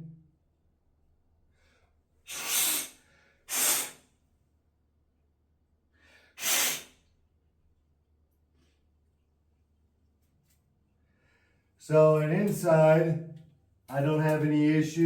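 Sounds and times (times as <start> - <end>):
short bursts of hiss: 2.3 - 4.1, 6.4 - 7.0.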